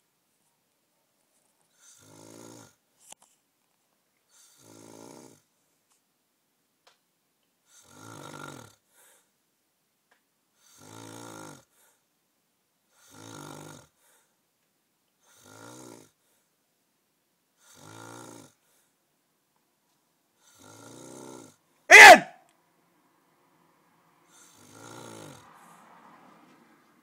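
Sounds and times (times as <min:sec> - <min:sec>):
man snoring: 0:01.8 - 0:02.8, 0:04.4 - 0:05.5, 0:07.8 - 0:08.8, 0:10.6 - 0:11.7, 0:13.0 - 0:14.0, 0:15.3 - 0:16.2, 0:17.6 - 0:18.6, 0:20.4 - 0:22.3, 0:24.3 - 0:25.5.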